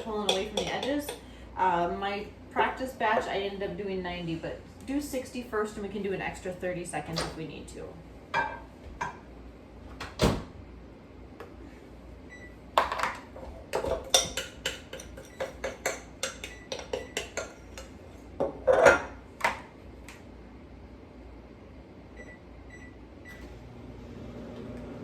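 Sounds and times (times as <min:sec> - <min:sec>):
utensils clinking against bowls: 0:00.0 - 0:01.3, 0:13.0 - 0:18.0.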